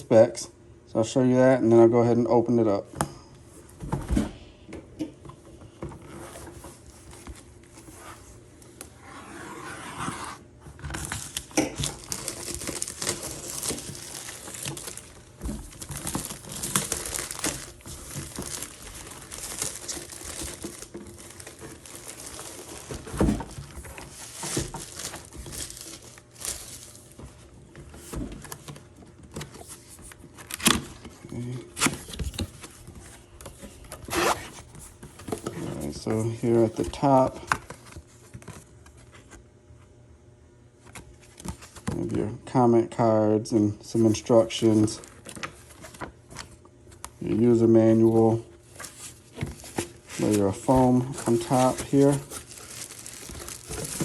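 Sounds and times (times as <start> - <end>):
packaging crinkling and tearing: 10.9 - 27.2, 48.7 - 54.0.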